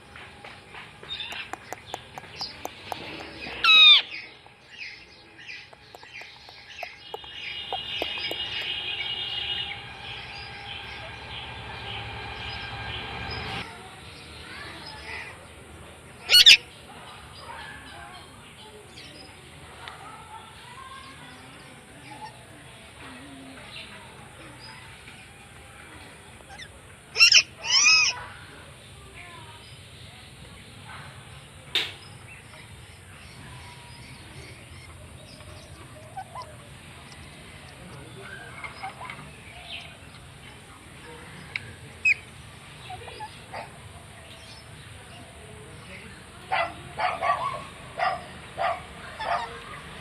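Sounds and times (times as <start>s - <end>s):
parakeet shrill calls: 1.1s - 4.2s, 16.3s - 16.6s, 26.5s - 28.2s
parrot chirps: 1.1s - 4.2s, 5.5s - 9.7s, 16.3s - 16.6s, 26.5s - 28.2s
parrot squawking: 1.2s - 4.2s, 16.3s - 16.6s, 26.5s - 28.2s.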